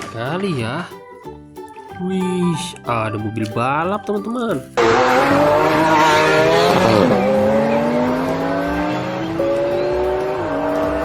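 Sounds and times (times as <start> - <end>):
race car engine revving: 4.8 - 11.0.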